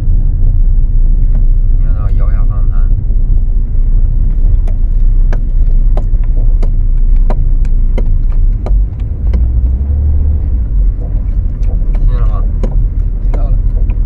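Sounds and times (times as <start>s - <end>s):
car road and engine rumble: 0.0s - 14.0s
sharp chassis clicks: 2.9s - 14.0s.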